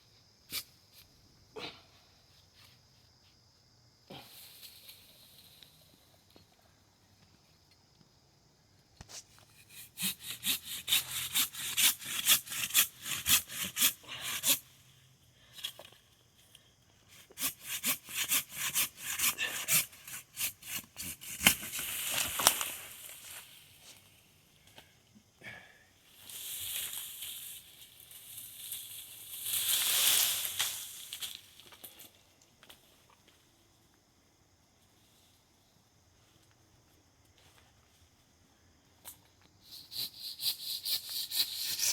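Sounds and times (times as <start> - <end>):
hand saw cutting wood: 9.5 - 14.7, 17.2 - 22.4, 39.8 - 41.9.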